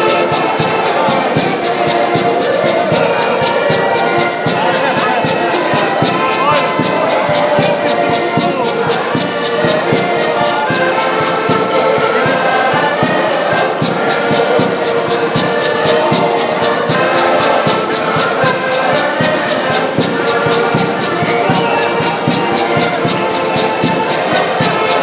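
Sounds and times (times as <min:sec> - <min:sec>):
quick drum beat: 0:00.0 - 0:10.8, 0:11.9 - 0:25.0
brass instruments playing melody: 0:00.0 - 0:25.0.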